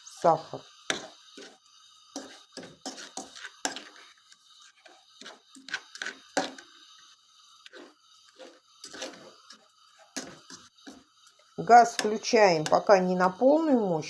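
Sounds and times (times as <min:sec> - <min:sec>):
fork scraping a pot: 0:00.9 - 0:12.9.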